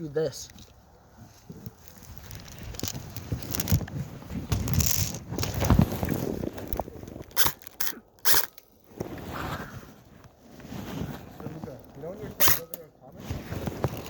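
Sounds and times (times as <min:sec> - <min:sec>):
rustling and gear handling: 0:01.2 - 0:14.0
airsoft gun shots: 0:12.4 - 0:12.8.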